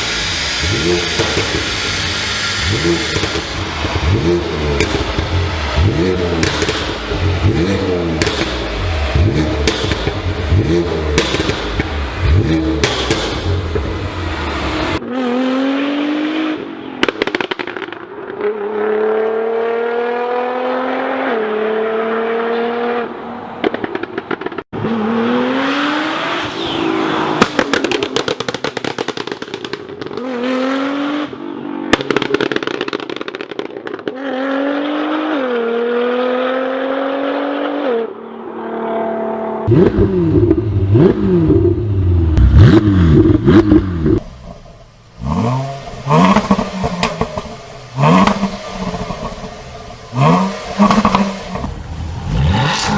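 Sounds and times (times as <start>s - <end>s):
exhaust crackles and pops: 0.0s - 15.0s, 17.0s - 18.4s, 23.6s - 24.7s, 27.4s - 30.4s, 31.9s - 34.3s, 39.7s - 52.9s
engine revving in blips: 0.0s - 38.1s, 39.0s - 44.6s, 45.2s - 52.9s
car engines accelerating: 0.0s - 52.9s.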